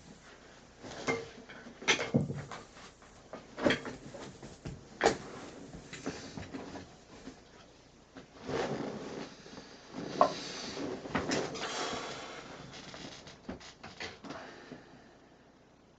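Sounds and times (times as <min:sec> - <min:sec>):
objects knocking and clattering: 0:00.9 - 0:06.8.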